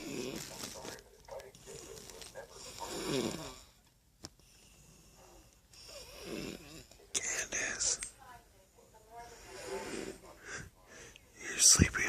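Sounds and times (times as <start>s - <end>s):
woman snoring: 2.8s - 3.7s, 5.8s - 6.8s.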